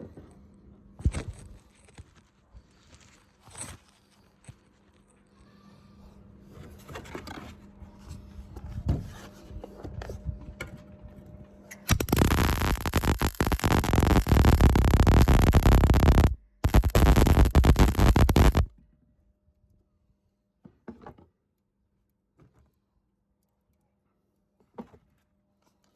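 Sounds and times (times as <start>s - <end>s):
welder crackling: 11.9s - 18.7s.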